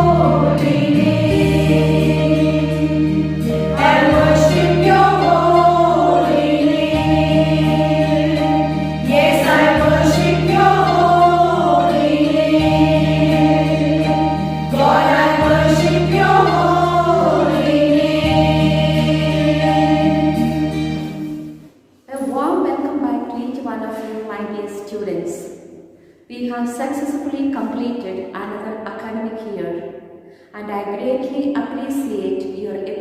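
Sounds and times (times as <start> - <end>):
choir singing: 0.0 - 21.6
held-note accompaniment: 0.0 - 21.6.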